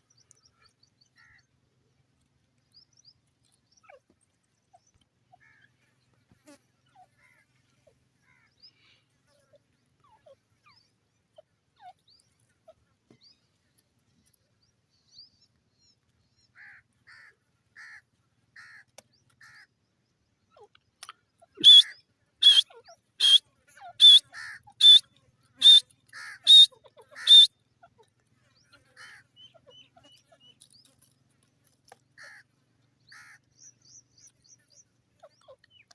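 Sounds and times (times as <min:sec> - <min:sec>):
francolin calling: 0:21.6 - 0:22.6, 0:23.2 - 0:25.0, 0:25.6 - 0:25.8, 0:26.4 - 0:27.5.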